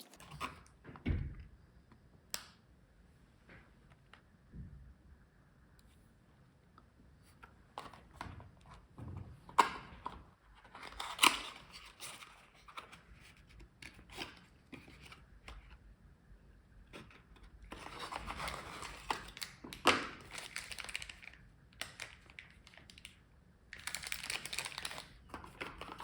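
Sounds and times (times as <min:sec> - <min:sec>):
packaging rustling and crinkling: 0:17.7 - 0:26.0.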